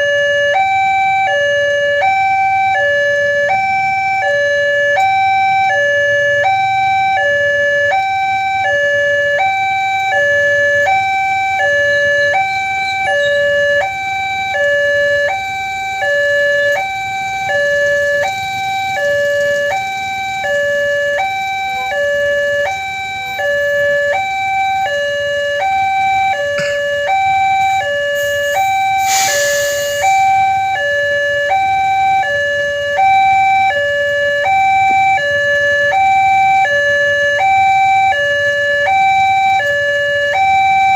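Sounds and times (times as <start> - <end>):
level crossing two-tone alarm: 0.0 - 40.9
brief hiss: 29.0 - 30.1.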